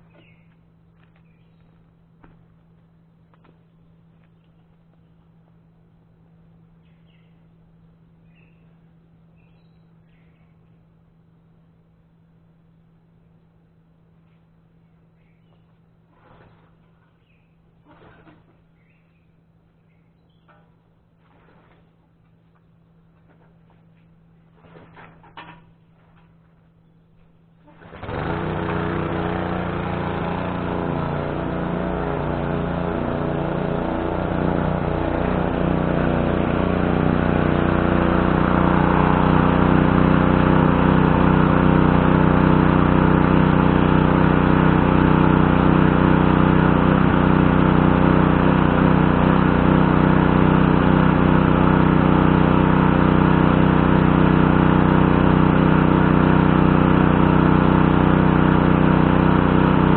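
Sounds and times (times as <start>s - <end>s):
pressure washer engine running: 27.8s - 59.9s.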